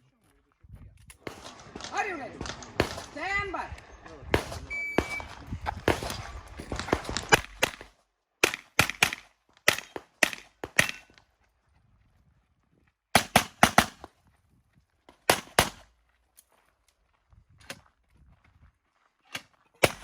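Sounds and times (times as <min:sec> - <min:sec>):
pistol shots: 0:01.2 - 0:11.2, 0:13.2 - 0:14.1, 0:15.3 - 0:15.8.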